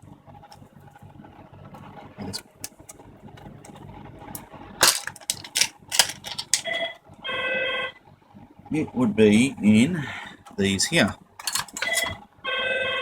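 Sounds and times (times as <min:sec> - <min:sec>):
computer parts clicking: 0:04.8 - 0:06.8, 0:10.9 - 0:12.2.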